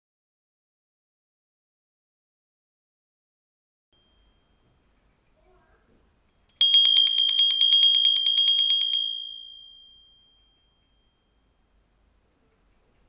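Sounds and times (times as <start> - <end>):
handbell ringing: 6.5 - 10.7.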